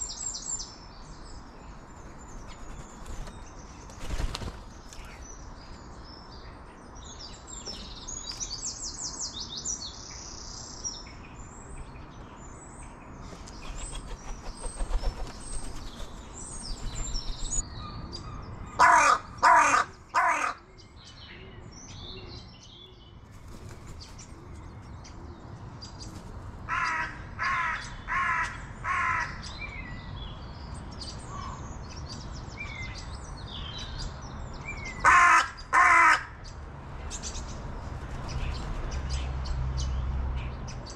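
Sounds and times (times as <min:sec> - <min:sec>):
small birds chirping: 0:00.0 - 0:28.8, 0:29.4 - 0:35.7, 0:36.4 - 0:40.9
crow cawing: 0:18.8 - 0:20.6, 0:26.7 - 0:29.4, 0:35.0 - 0:36.4.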